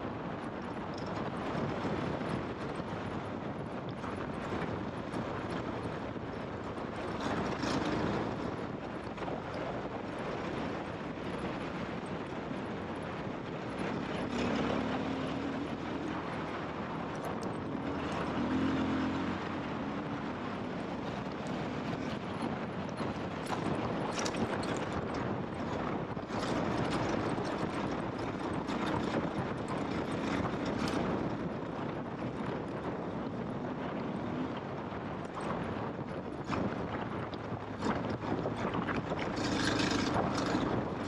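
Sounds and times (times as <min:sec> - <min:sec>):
wind noise: 0:00.0 - 0:41.0
motorcycle engine running: 0:00.4 - 0:31.5, 0:35.2 - 0:41.0
rough ground noise: 0:35.4 - 0:41.0.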